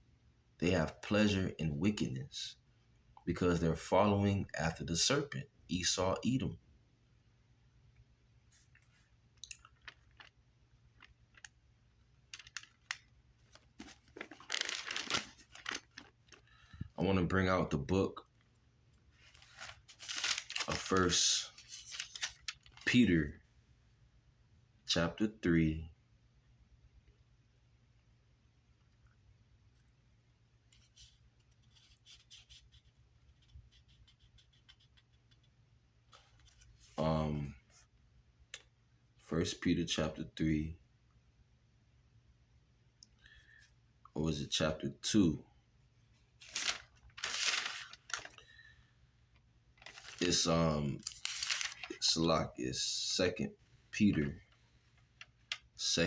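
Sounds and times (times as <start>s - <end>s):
rustling: 12.2s - 17.0s, 19.1s - 22.9s, 46.4s - 48.7s, 49.8s - 52.1s.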